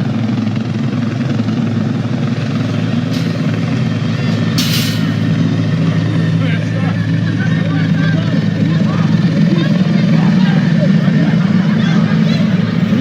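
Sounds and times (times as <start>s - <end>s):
helicopter thrumming: 0.0s - 13.0s.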